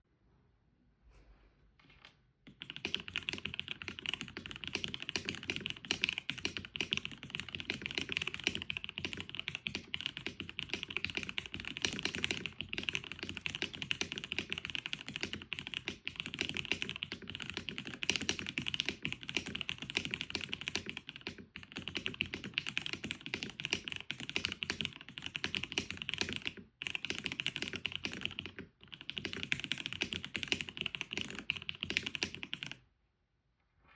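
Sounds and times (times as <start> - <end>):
fast typing on mechanical keyboard: 2.0 - 32.8.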